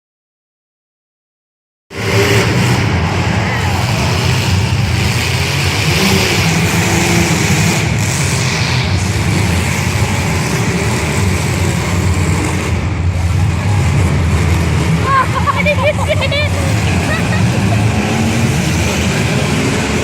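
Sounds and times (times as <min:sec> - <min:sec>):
car engines rumbling: 0:01.9 - 0:20.0.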